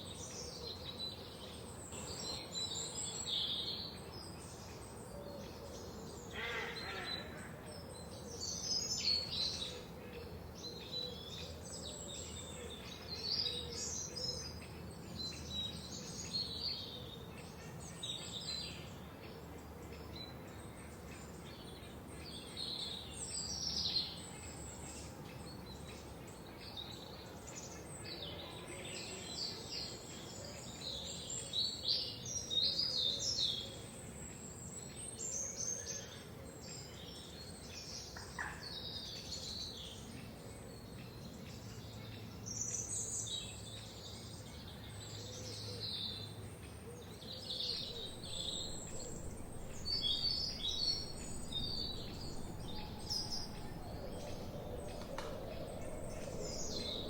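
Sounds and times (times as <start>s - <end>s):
songbirds chirping and singing: 7.8s - 57.0s
faint steady hiss: 47.7s - 57.0s.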